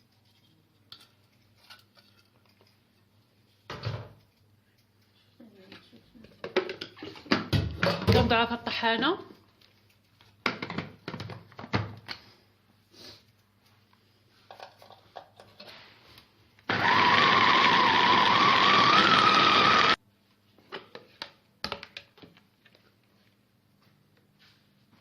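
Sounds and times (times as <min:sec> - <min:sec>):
electric grinder motor whine: 0:16.7 - 0:20.0.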